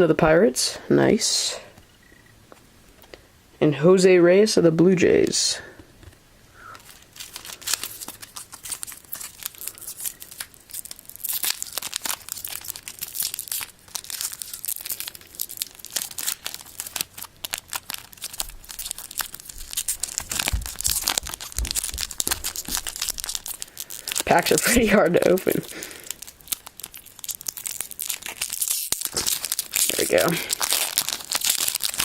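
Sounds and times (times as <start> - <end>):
foil wrapper crinkling and tearing: 6.7 - 32.0.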